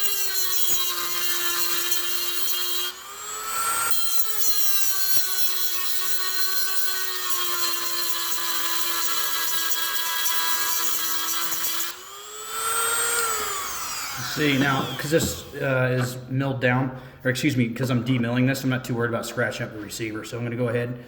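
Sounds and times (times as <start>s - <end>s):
rotary tool grinding metal: 0.0s - 15.6s.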